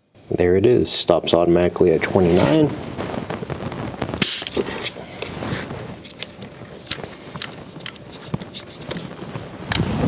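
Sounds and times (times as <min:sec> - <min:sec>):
tire inflator handling clicks: 0:04.2 - 0:04.6
short air hiss: 0:04.2 - 0:04.7.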